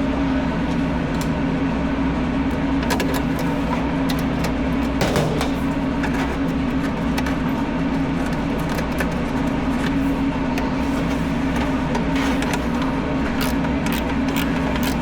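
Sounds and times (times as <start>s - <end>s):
oven machinery humming: 0.0s - 15.0s
clicks and rattles: 2.8s - 10.0s.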